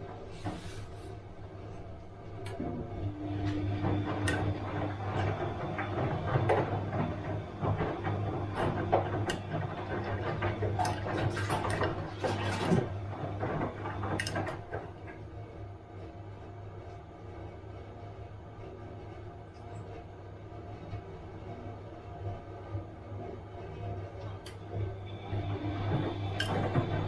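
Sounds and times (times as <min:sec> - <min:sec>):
washing machine drum clattering: 0:00.0 - 0:15.2, 0:24.3 - 0:27.0
washing machine motor hum: 0:00.0 - 0:27.0.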